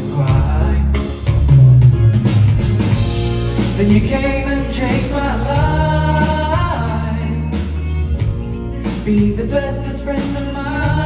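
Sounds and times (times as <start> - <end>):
man singing: 0.0 - 1.5, 3.6 - 8.0, 8.8 - 11.0
bass line: 0.0 - 11.0
guitar: 0.0 - 11.0.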